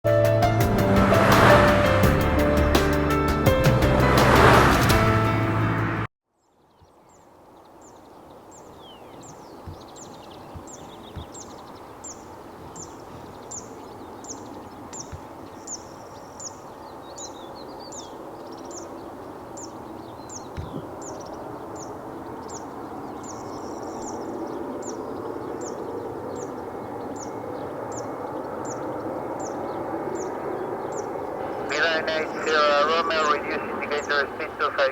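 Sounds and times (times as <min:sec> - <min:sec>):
bird chirping: 0:06.4 - 0:34.9
other bird calls: 0:06.8 - 0:34.9
jet engine rumble: 0:20.8 - 0:34.9.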